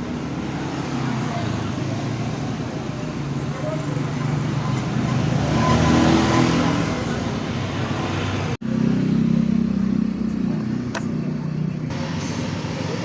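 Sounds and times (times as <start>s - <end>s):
motorcycle engine running: 8.6s - 13.0s.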